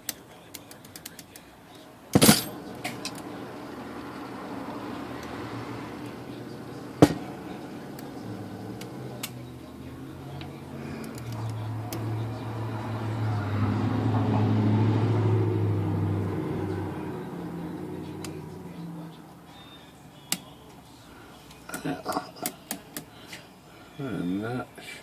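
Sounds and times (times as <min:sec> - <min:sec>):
sharp metal snap: 0:02.1 - 0:03.2.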